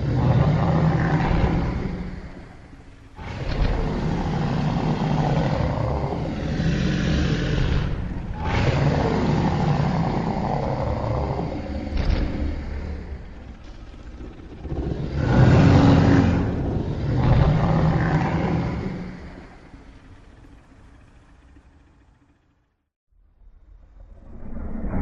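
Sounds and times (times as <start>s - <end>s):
monster roaring: 0.0s - 21.6s.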